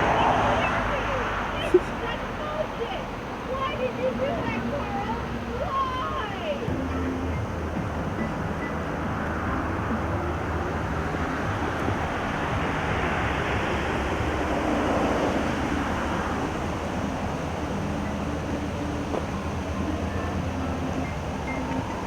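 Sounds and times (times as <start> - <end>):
road traffic rush: 0.0 - 22.0.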